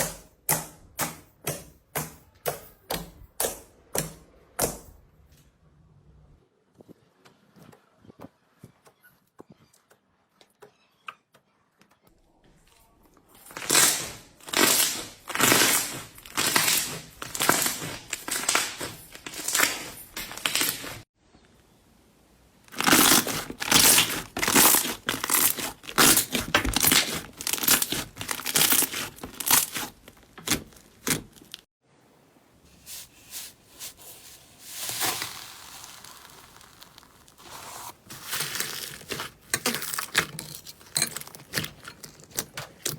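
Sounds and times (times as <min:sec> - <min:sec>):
slime squeezed crackling: 0:22.7 - 0:31.6, 0:32.8 - 0:40.5.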